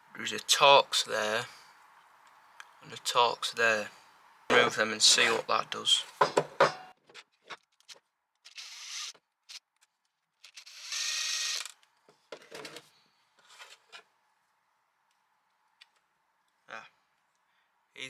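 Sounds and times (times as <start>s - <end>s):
clicks and knocks of metal parts: 4.5s - 8.0s.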